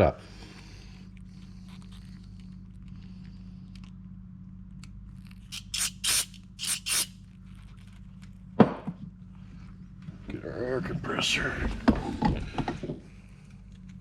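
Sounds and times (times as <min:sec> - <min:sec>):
steady low hum: 0:00.0 - 0:14.0
spray can hissing blasts: 0:05.5 - 0:07.1.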